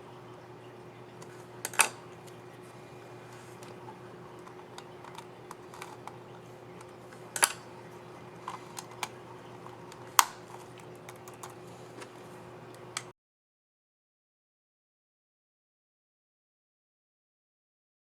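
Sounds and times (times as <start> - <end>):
laptop keys clicking: 3.4 - 13.1.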